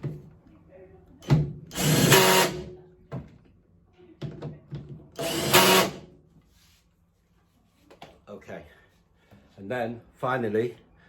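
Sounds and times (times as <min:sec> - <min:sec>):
power drill driving bolts: 0:01.7 - 0:02.7, 0:05.2 - 0:06.0.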